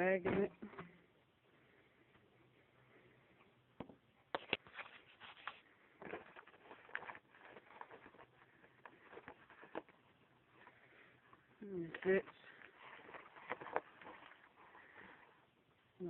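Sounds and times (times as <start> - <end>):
vacuum bag rustling and scraping: 4.6 - 15.5.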